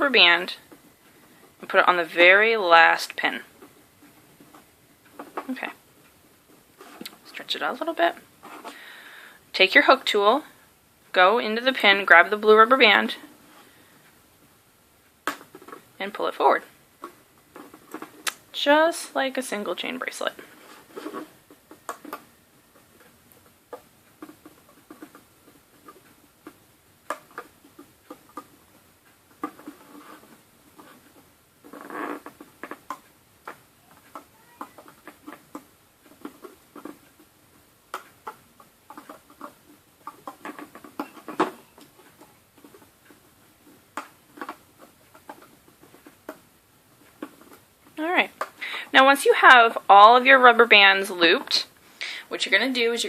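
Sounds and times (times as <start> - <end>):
scratchy rustle: 19.9 - 22.1, 29.4 - 32.8.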